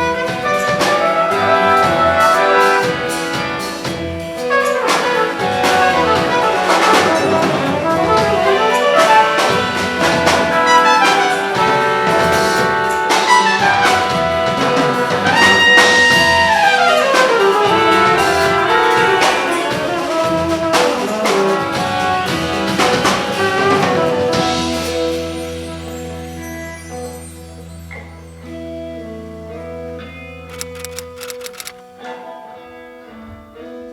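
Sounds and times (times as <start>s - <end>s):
brass band playing jazz: 0.0s - 27.1s.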